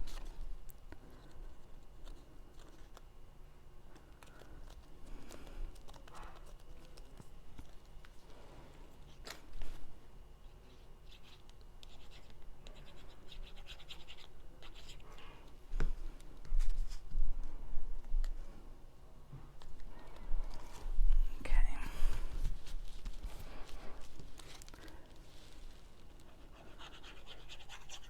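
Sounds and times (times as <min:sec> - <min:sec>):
scratchy rustling of cardstock: 0:00.0 - 0:03.1, 0:03.9 - 0:15.6, 0:22.0 - 0:28.0.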